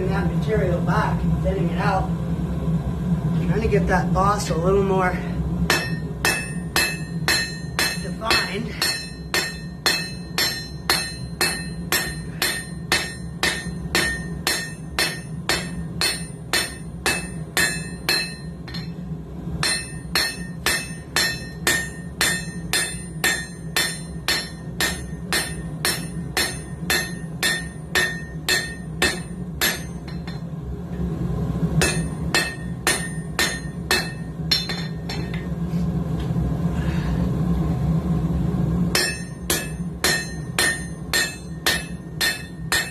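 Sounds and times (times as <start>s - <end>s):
low steady hum: 0.0s - 42.9s
hammer striking steel on anvil: 5.7s - 19.0s, 19.6s - 30.5s, 31.8s - 35.5s, 38.9s - 42.9s.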